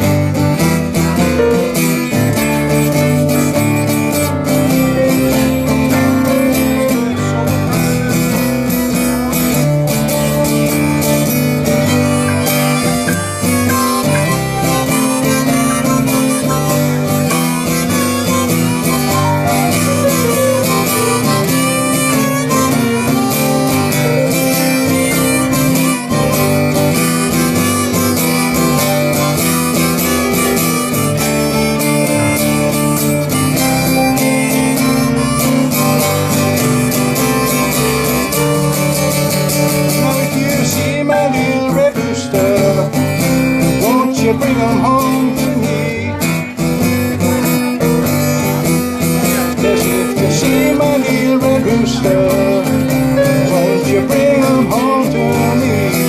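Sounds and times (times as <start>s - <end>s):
acoustic guitar: 0.0s - 56.0s
fiddles playing blues: 0.0s - 56.0s
upright bass: 0.0s - 56.0s.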